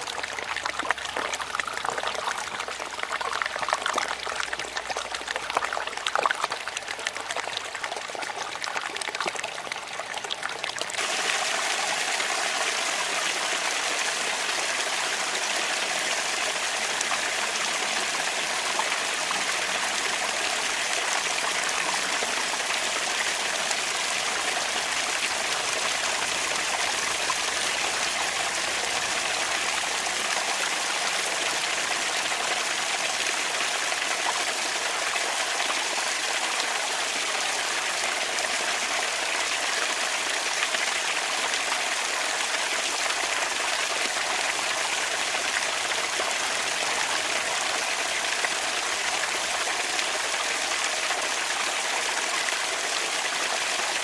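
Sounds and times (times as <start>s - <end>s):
water trickling from fountain: 0.0s - 54.0s.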